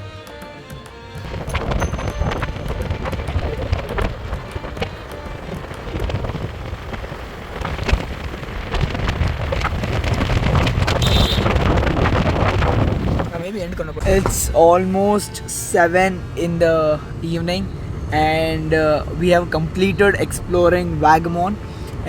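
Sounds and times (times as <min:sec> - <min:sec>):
heavy rain tapping: 0:01.1 - 0:15.8
low steady rumble: 0:01.3 - 0:21.9.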